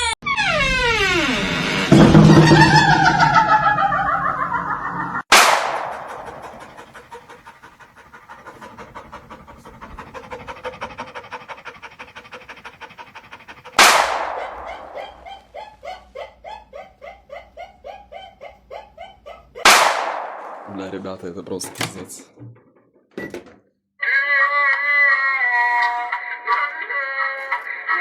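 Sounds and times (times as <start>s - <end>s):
sudden sharp bang: 5.3s - 6.4s
rapid rhythmic panting: 5.3s - 20.3s.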